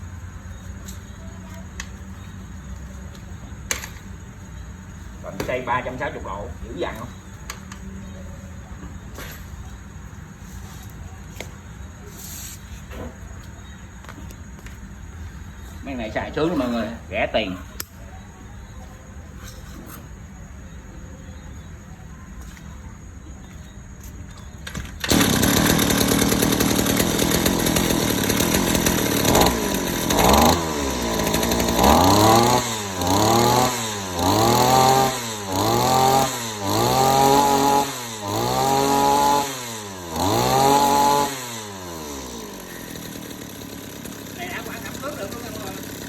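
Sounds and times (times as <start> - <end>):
brush-cutter engine revving: 25.0 - 46.0.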